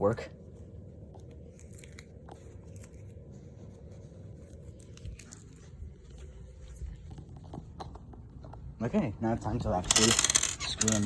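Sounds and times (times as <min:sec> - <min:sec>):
screws clicking and rustling: 0:09.8 - 0:11.0.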